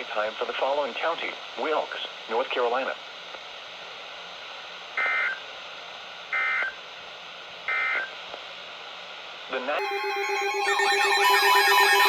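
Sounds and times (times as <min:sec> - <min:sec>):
short digital code bursts: 0:09.8 - 0:12.0.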